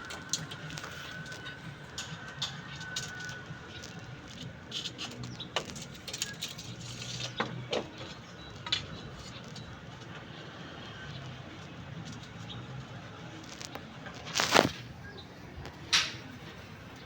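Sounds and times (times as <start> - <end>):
small hard objects clicking: 0.0 - 9.7.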